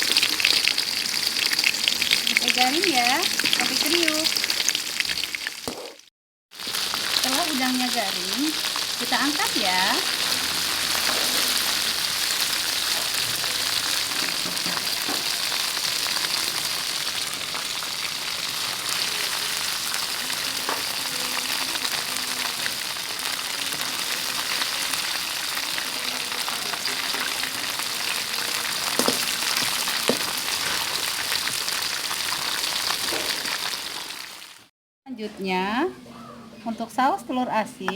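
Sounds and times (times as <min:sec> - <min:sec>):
shrimp sizzling in hot oil: 0:00.0 - 0:34.7.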